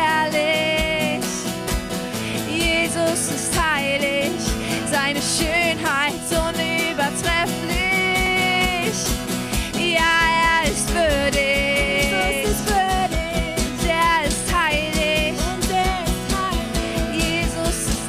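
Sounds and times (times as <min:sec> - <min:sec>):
worship band music: 0:06.2 - 0:17.8
steady drum beat: 0:07.5 - 0:18.0.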